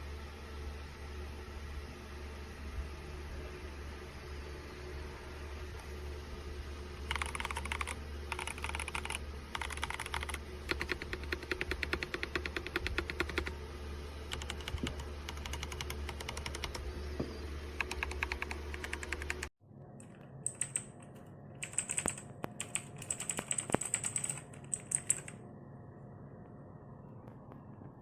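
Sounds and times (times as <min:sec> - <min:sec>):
mechanical keyboard typing: 0:07.1 - 0:13.5, 0:14.3 - 0:16.9, 0:17.8 - 0:25.4.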